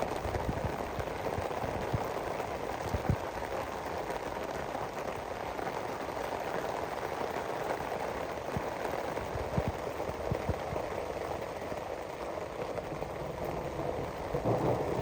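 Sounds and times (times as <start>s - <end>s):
heavy raindrop tapping: 0.0s - 15.0s
steady rain: 0.0s - 15.0s.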